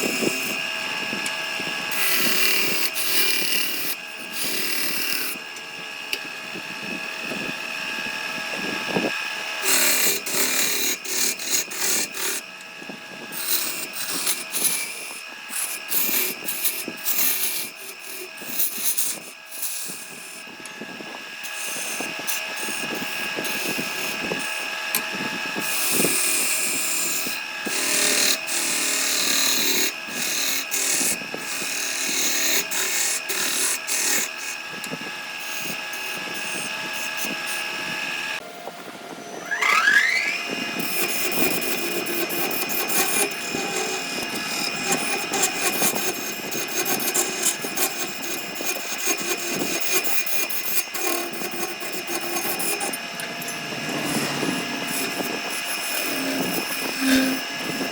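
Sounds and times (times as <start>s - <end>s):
power tool cutting wood: 0.0s - 57.9s.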